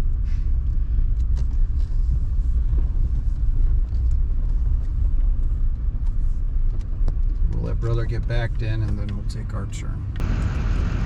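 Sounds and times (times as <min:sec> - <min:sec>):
truck engine rumbling: 0:00.0 - 0:11.0.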